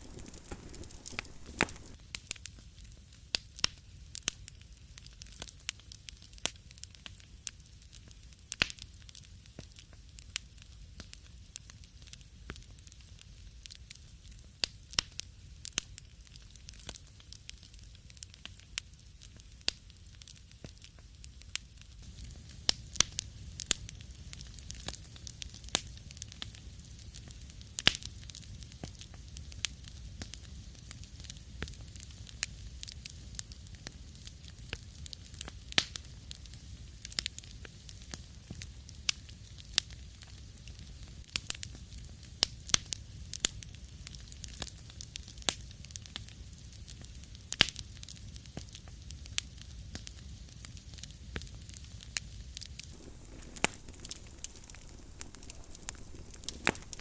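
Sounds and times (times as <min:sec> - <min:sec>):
low rumble of flame: 0:00.0 - 0:02.0, 0:48.1 - 0:57.0
wood fire crackling: 0:00.0 - 0:02.0, 0:20.1 - 0:57.0.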